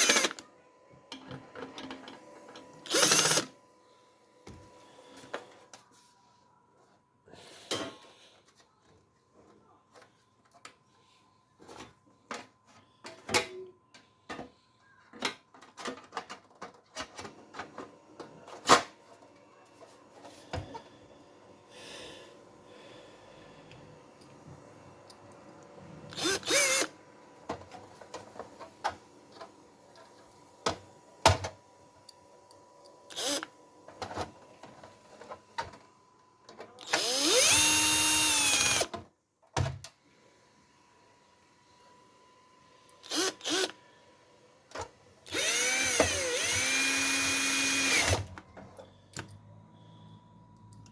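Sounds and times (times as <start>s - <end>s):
cordless screwdriver whirring: 0.0s - 0.4s, 2.8s - 3.5s, 26.1s - 26.9s, 33.1s - 33.5s, 36.8s - 38.9s, 43.0s - 43.8s, 45.2s - 48.4s
hardware clicks and knocks: 1.1s - 2.7s.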